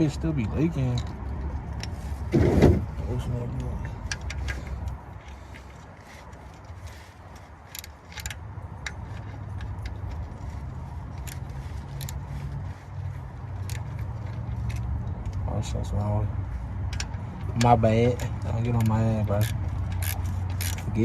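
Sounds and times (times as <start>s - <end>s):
metallic clicks of hand tools: 16.9s - 21.0s.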